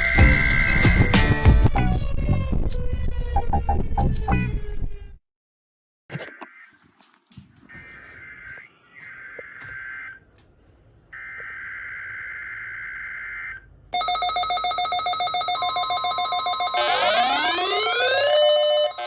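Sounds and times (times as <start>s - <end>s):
warning siren winding up: 11.2s - 19.0s
pulsing multi-tone alert sound: 16.5s - 19.0s.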